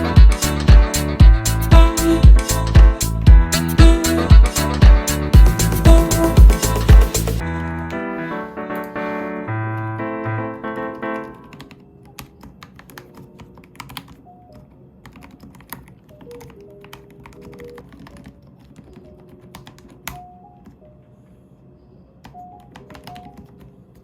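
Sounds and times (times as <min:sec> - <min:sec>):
mechanical keyboard typing: 0:10.7 - 0:20.8, 0:22.2 - 0:24.0.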